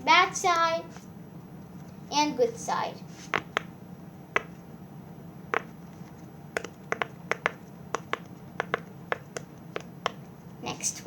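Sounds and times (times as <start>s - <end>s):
pop-it fidget toy popping: 4.4s - 4.6s, 5.5s - 5.8s, 6.6s - 10.2s.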